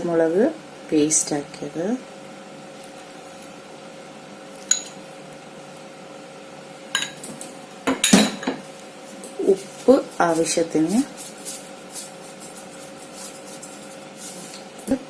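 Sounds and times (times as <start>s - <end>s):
spoon clinking against bowl: 4.7s - 5.0s.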